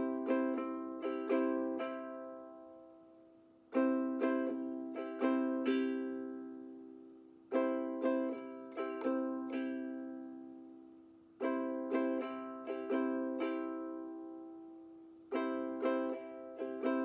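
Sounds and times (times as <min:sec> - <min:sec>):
ukulele strumming: 0:00.0 - 0:17.0.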